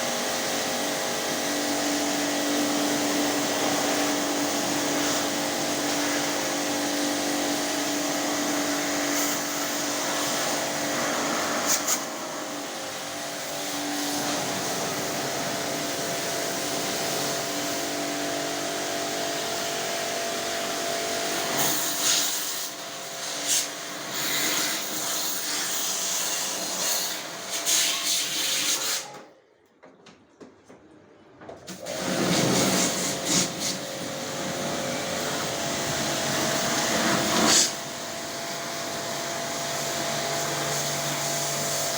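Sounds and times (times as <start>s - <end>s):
pressure washer motor running: 0.0s - 28.6s, 31.7s - 41.9s
water jet hissing: 31.7s - 41.9s.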